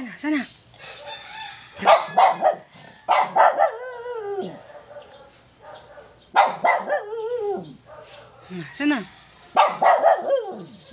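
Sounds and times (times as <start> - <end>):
howl-like dog bark: 1.8 - 8.3, 9.6 - 10.8
dog barking: 1.8 - 8.5, 9.6 - 10.7.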